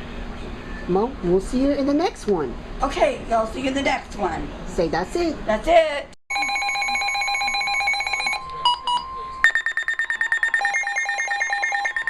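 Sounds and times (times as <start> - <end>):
pulsing high alert tone: 6.3 - 12.0
short beeps: 6.3 - 12.0.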